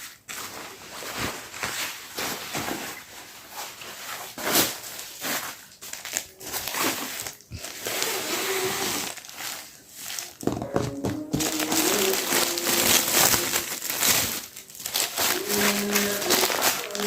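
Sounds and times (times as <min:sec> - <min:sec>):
plastic packaging crinkling: 0:00.0 - 0:17.0.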